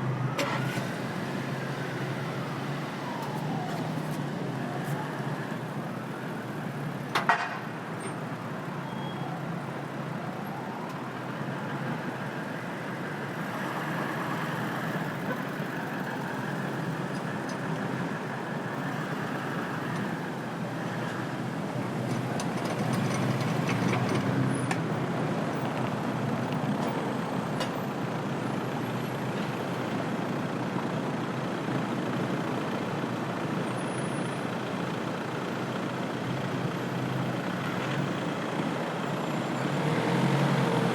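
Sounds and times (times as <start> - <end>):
traffic noise: 0.0 - 40.9.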